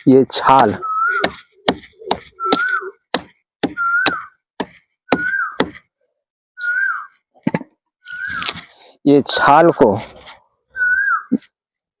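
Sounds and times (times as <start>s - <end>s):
high whistling tone: 0.7s - 1.5s, 2.3s - 3.0s, 3.7s - 4.4s, 5.1s - 5.7s, 6.6s - 7.2s, 8.0s - 8.6s, 10.7s - 11.4s
chopping bark: 1.1s - 5.8s.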